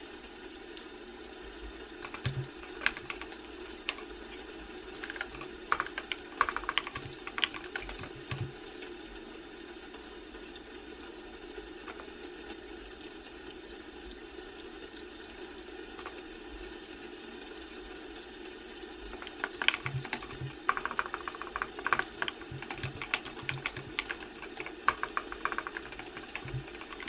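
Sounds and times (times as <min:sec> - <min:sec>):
keyboard typing: 0:02.0 - 0:08.6, 0:11.8 - 0:12.2, 0:15.3 - 0:16.2, 0:19.0 - 0:27.0.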